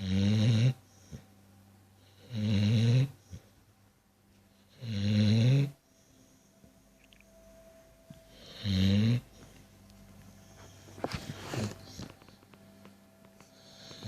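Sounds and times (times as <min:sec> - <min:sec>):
dog snoring: 0:00.0 - 0:01.3, 0:02.0 - 0:03.5, 0:04.6 - 0:06.1, 0:08.3 - 0:09.6, 0:10.4 - 0:12.4, 0:13.4 - 0:14.0.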